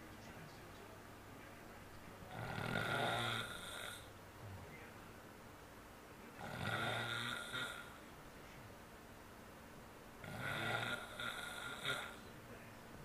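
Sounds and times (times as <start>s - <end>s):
person snoring: 2.3s - 4.1s, 6.4s - 8.0s, 10.2s - 12.3s.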